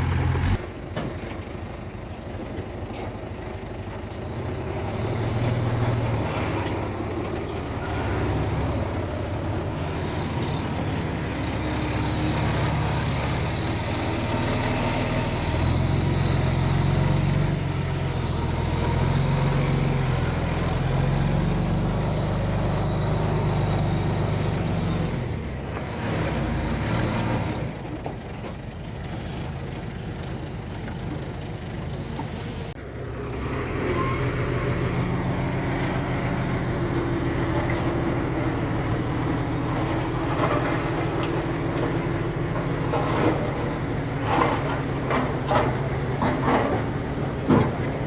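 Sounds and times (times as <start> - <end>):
diesel machinery engine hum: 0.0 - 48.0
brief high squeals: 33.9 - 34.5.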